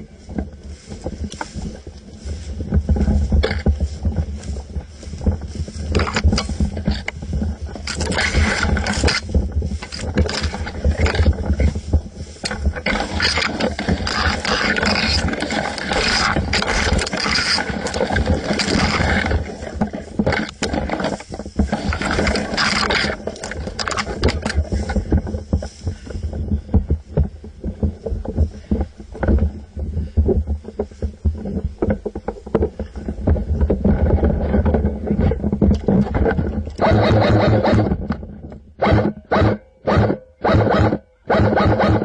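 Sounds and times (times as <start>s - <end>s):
scraping and knocks of handled gun: 0.0s - 36.9s
camera handling rumble: 0.0s - 42.0s.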